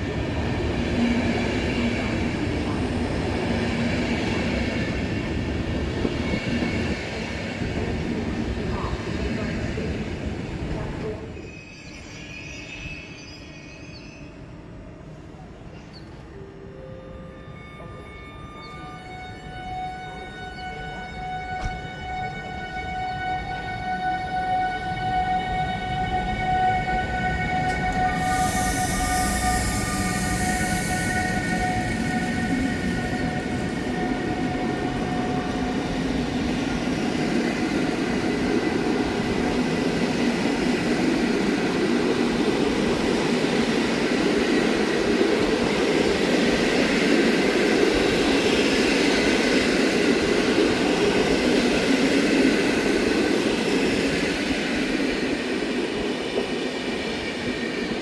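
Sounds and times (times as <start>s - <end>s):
train wheels on rails: 0.0s - 12.1s, 24.7s - 58.0s.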